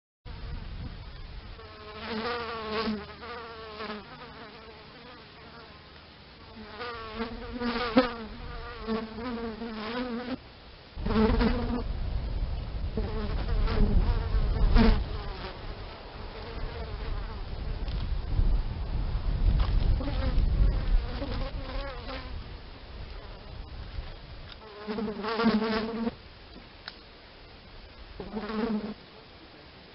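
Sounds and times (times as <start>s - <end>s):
bees buzzing in flight: 11.0s - 11.9s
low rumble: 11.0s - 13.0s.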